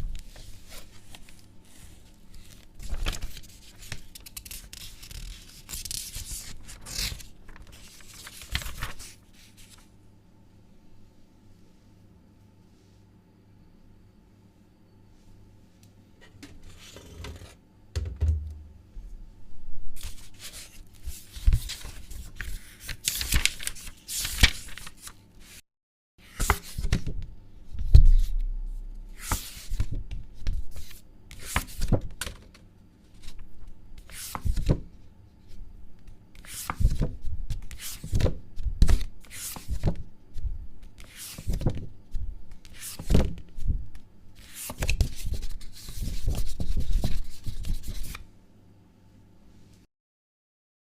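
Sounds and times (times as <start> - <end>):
paper rustling and tearing: 0.2 - 9.8, 20.0 - 25.6
low thud: 18.0 - 18.8.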